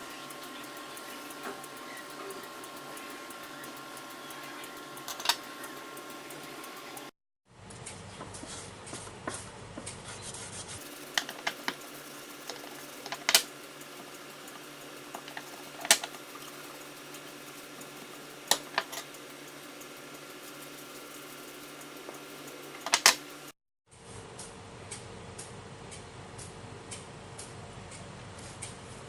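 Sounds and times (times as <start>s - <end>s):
sharp clicks and knocks: 0.0s - 7.1s, 10.8s - 23.5s
low mechanical hum: 0.0s - 9.9s, 10.8s - 29.0s.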